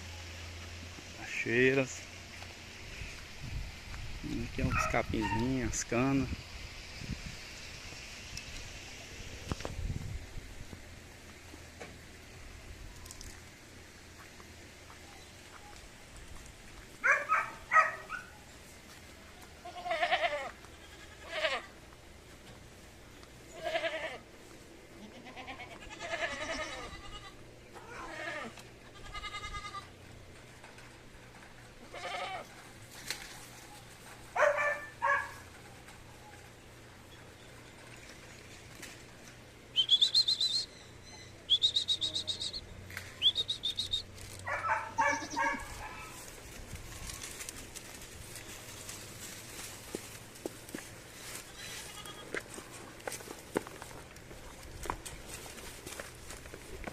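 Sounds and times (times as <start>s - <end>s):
goats bleating: 19.5s - 21.8s, 23.5s - 24.3s, 25.0s - 30.0s, 31.8s - 32.6s, 44.5s - 46.3s, 51.3s - 52.5s
bird chirping: 39.8s - 44.1s.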